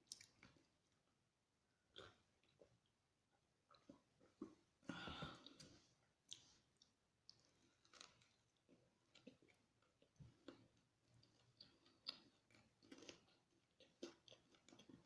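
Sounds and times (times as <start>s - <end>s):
chewing and mouth clicks: 0.1s - 0.7s, 6.3s - 15.0s.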